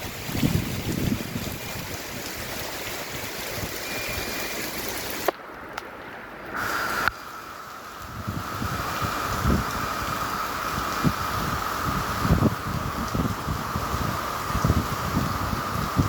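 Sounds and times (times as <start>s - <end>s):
heavy rain hissing: 0.0s - 5.3s, 6.5s - 16.0s
faint high tone: 3.8s - 4.6s.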